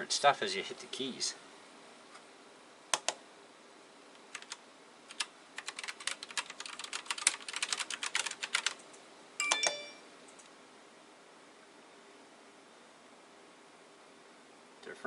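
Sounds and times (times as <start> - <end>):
mechanical keyboard keys clicking: 4.3 - 8.9
electronic chime: 9.4 - 10.1.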